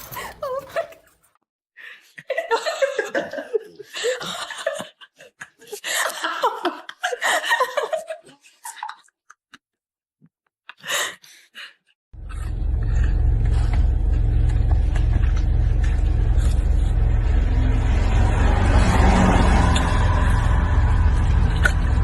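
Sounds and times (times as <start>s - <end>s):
breaths: 1.8s - 2.2s, 3.8s - 4.3s, 10.7s - 12.0s.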